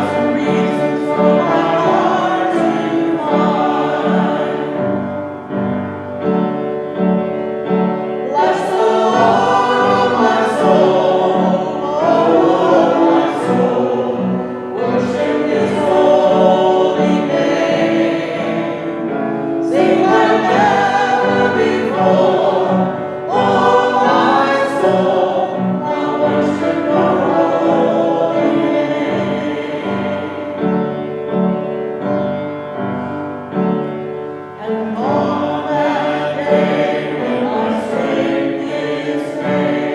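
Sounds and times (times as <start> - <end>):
voices singing: 0.0 - 5.4, 8.2 - 31.1, 34.6 - 39.9
instrumental accompaniment: 0.0 - 39.9.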